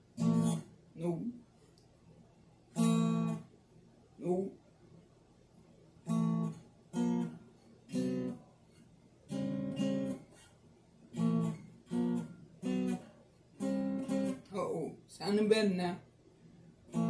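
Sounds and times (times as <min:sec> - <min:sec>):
acoustic guitar strummed chords: 0:00.0 - 0:00.7, 0:02.8 - 0:03.5, 0:06.0 - 0:10.5, 0:11.1 - 0:14.5.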